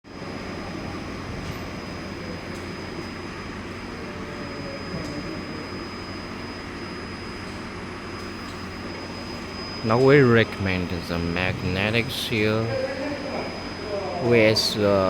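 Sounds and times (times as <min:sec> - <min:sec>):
high whine: 0:00.1 - 0:15.0
machinery hum and rumble: 0:00.1 - 0:15.0.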